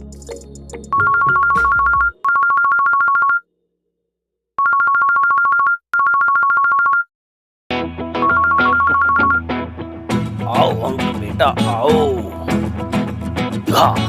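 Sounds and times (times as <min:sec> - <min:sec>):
background music: 0:00.0 - 0:03.2, 0:07.7 - 0:14.0
electronic telephone ringtone: 0:00.9 - 0:03.5, 0:04.6 - 0:07.1, 0:08.2 - 0:09.4.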